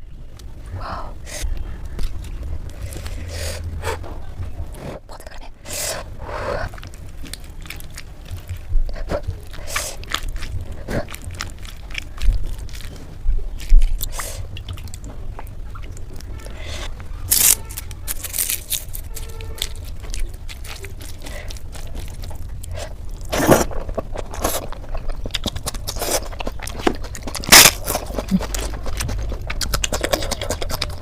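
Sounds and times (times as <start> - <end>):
sharp eating clicks: 6.6 - 16.3, 17.3 - 31.0
person chewing and biting food: 6.6 - 31.0.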